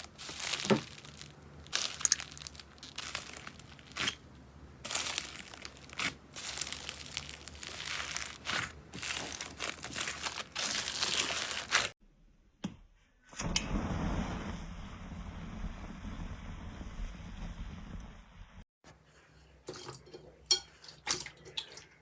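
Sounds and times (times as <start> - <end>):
slime squelching by hand: 0.0 - 12.0.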